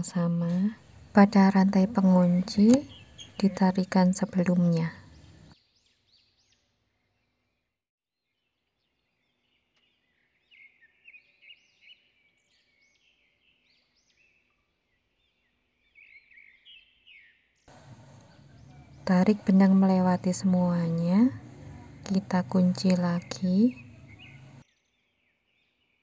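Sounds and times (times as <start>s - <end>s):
faint high bird chirps: 0.0s - 7.6s, 8.4s - 26.0s.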